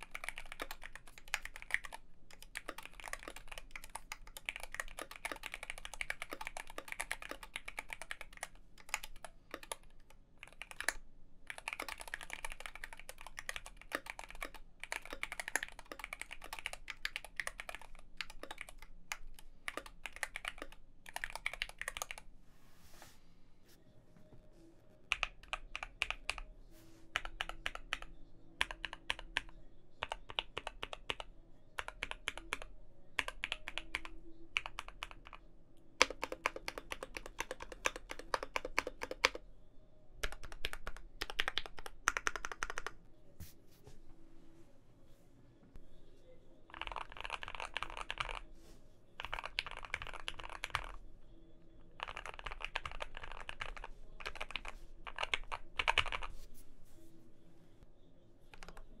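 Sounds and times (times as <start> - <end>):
mechanical keyboard typing: 0.0 - 22.2, 25.1 - 26.4, 27.2 - 35.4, 36.0 - 39.4, 40.2 - 43.0, 46.7 - 48.4, 49.2 - 51.0, 52.0 - 56.3, 58.5 - 58.8.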